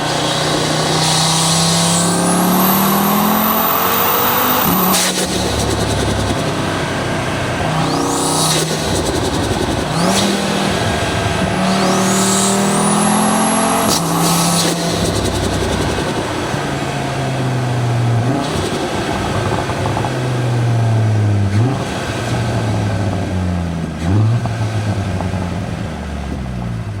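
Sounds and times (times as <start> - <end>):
turbo whine and flutter: 0.0 - 17.0
car engine accelerating through gears: 0.0 - 27.0.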